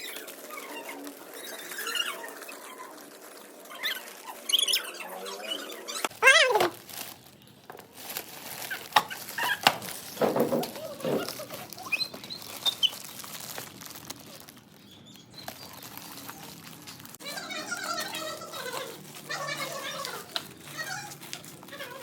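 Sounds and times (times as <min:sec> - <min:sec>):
packaging rustling and crinkling: 0:00.0 - 0:05.0, 0:05.6 - 0:22.0.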